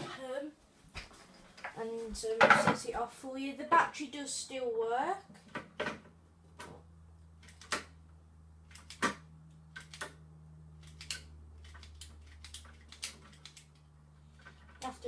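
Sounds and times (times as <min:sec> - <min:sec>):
steady low hum: 0:00.0 - 0:14.8
wire strippers clicking and snapping: 0:05.4 - 0:10.2, 0:10.8 - 0:15.0.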